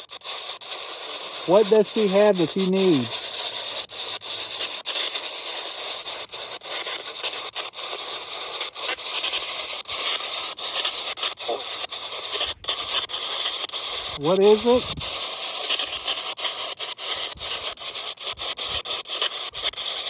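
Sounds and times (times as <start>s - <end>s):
radio static hiss: 0.0s - 18.0s
radio voice: 1.5s - 3.1s, 14.1s - 15.0s
radio tuning clicks: 1.5s - 3.2s, 11.4s - 15.2s.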